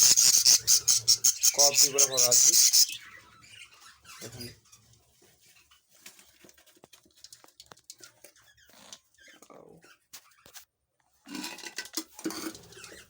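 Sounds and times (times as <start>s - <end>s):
chicks ticking and rustling: 0.0s - 9.1s.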